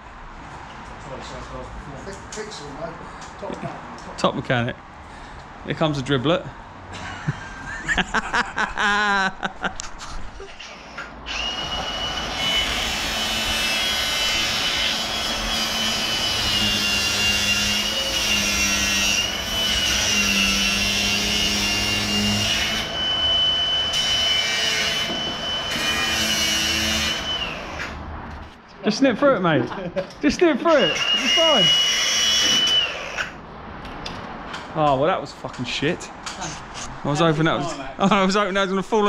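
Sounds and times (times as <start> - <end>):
power tool high whine: 10.6 - 28.0, 30.7 - 33.4.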